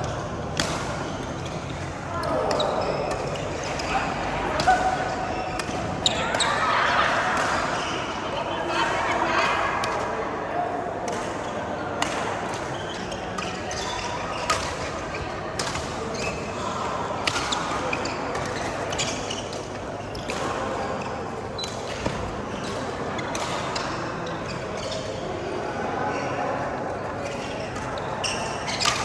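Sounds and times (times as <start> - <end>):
low chatter: 0.0 - 29.0
players' shoes: 0.0 - 29.0
rackets hitting shuttlecock: 0.1 - 6.5, 7.1 - 8.2.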